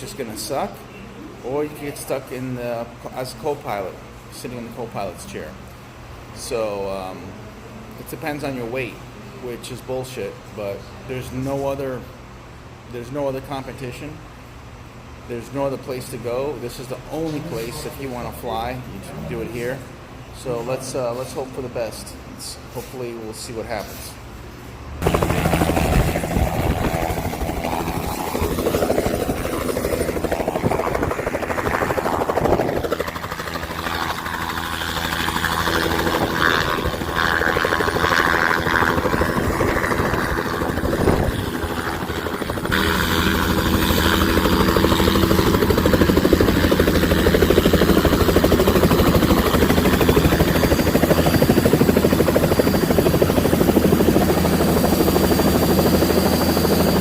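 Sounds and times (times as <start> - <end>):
helicopter turbine and rotor: 25.0 - 57.0.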